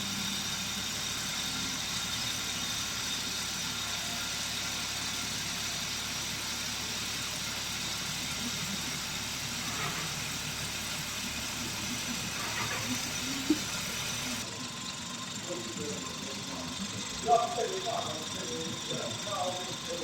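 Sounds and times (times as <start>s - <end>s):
car engine idling: 4.3s - 20.0s.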